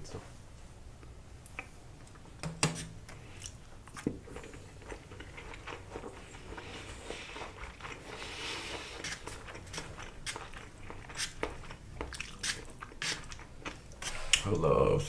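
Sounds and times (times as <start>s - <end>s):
wet chewing: 3.1s - 14.6s.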